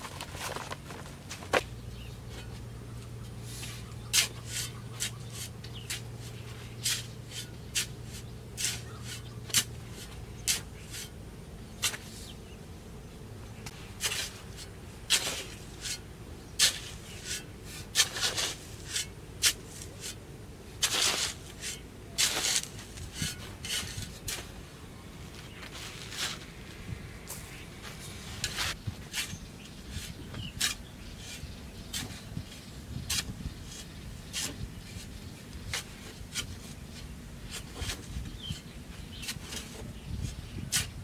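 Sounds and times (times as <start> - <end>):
wood scraping and rubbing: 0.0 - 5.9
low steady hum: 0.0 - 41.0.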